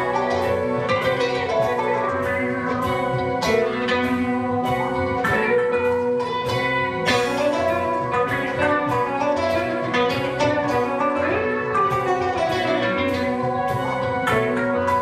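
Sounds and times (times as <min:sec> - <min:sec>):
guitar song over a beat: 0:00.0 - 0:15.0.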